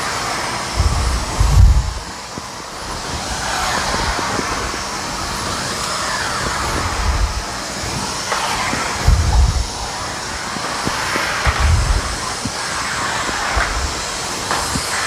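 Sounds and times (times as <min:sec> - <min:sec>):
steam mop hissing: 0:00.0 - 0:15.0
mop pad swishing over tiles: 0:00.7 - 0:15.0
low thuds: 0:00.8 - 0:02.1, 0:08.6 - 0:10.2, 0:10.8 - 0:12.5.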